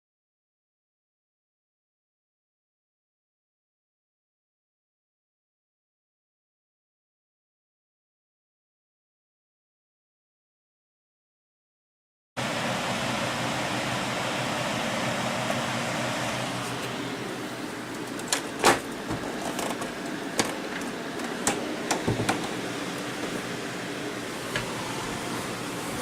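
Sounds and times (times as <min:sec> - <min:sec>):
computer cooling fans whooshing: 0:12.4 - 0:26.0.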